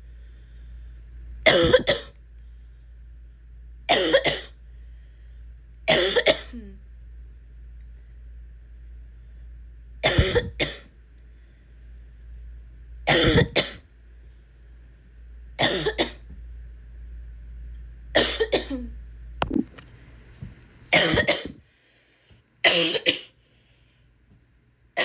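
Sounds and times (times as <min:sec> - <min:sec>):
woman coughing: 0:01.5 - 0:02.1, 0:03.9 - 0:04.5, 0:05.9 - 0:06.8, 0:10.0 - 0:10.9, 0:13.1 - 0:13.8, 0:15.6 - 0:16.2, 0:18.2 - 0:19.7, 0:21.0 - 0:21.6, 0:22.7 - 0:23.3.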